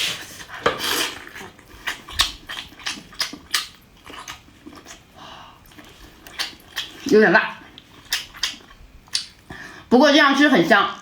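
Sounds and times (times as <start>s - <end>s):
wet chewing mouth clicks: 1.8s - 7.1s, 7.7s - 9.5s.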